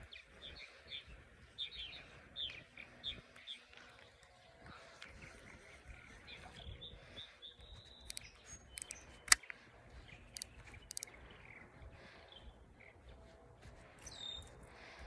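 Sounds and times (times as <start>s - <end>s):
small birds chirping: 7.4s - 9.4s, 10.3s - 11.2s, 14.0s - 14.7s
sharp clicks: 8.8s - 9.4s, 10.4s - 11.1s.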